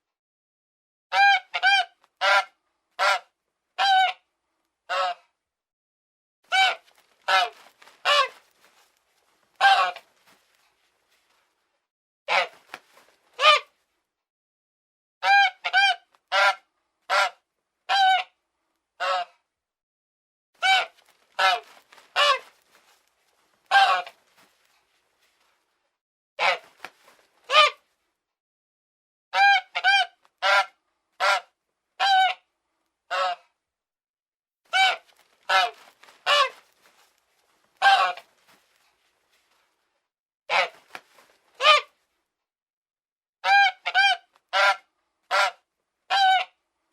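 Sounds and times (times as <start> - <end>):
goose honking: 1.1 - 3.2, 6.5 - 8.6, 9.6 - 10.1, 13.4 - 13.7, 15.2 - 18.3, 20.6 - 22.9, 23.7 - 24.2, 26.4 - 26.8, 27.5 - 27.8, 29.4 - 31.4, 34.7 - 37.0, 37.8 - 38.3, 40.5 - 40.8, 41.6 - 41.9, 43.4 - 46.5.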